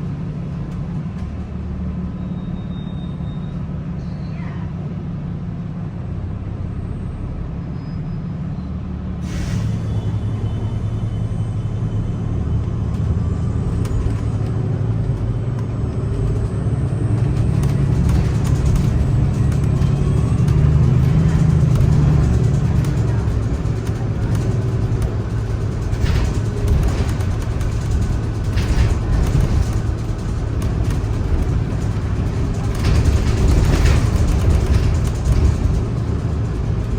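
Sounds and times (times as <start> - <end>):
bus drivetrain humming: 0.0 - 36.9
air hiss: 9.2 - 10.3.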